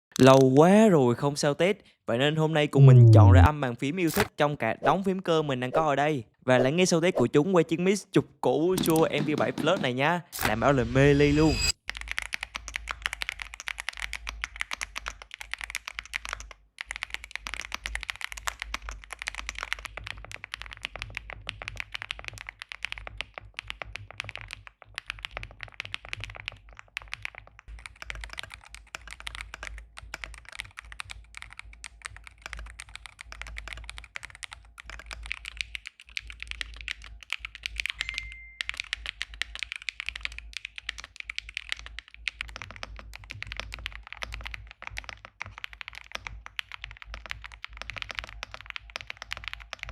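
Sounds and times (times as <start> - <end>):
mechanical keyboard typing: 11.8 - 49.9.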